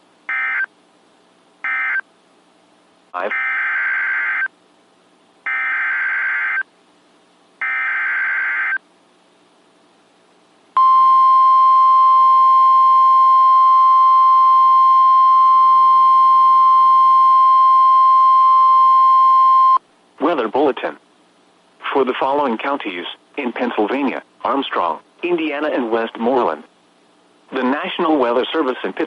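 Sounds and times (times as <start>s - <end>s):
steady warning alarm tone: 1.6s - 2.0s, 3.2s - 4.5s, 5.5s - 6.6s, 7.6s - 8.8s.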